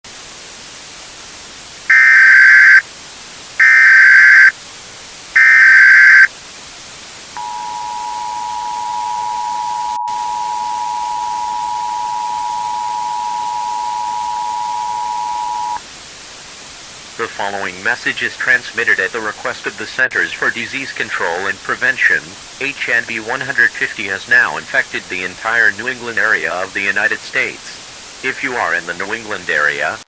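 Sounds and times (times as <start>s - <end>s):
constant hiss: 0.0s - 30.0s
screeching digital data bursts: 1.9s - 2.8s, 3.6s - 4.5s, 5.4s - 6.3s
two-tone attention signal: 1.9s - 2.8s, 3.6s - 4.5s, 5.4s - 6.3s, 7.4s - 15.8s.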